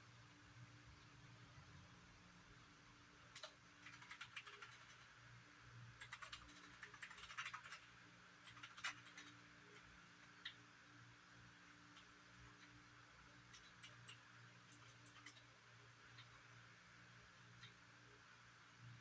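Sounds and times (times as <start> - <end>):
faint low hum: 0.0 - 19.0
light clicks and ticks: 3.3 - 5.2, 6.0 - 10.6, 13.4 - 16.5.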